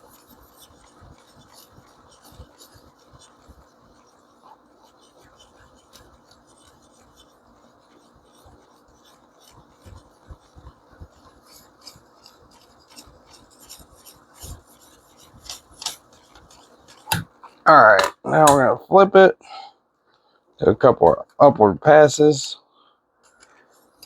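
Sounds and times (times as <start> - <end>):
sharpening stone rasping on steel: 11.2 - 18.1.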